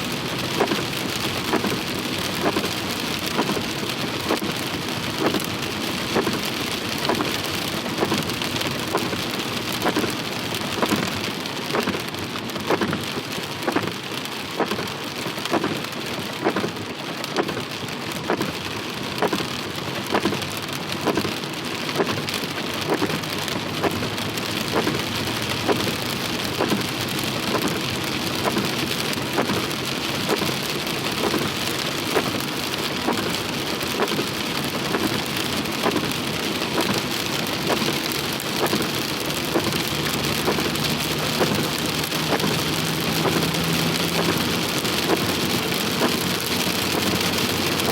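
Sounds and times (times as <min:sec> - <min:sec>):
heavy rain falling: 0:00.0 - 0:47.9.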